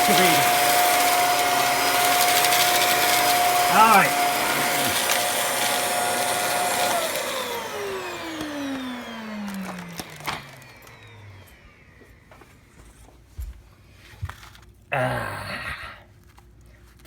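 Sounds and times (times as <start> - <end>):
vacuum cleaner motor spinning down: 0.0 - 12.8.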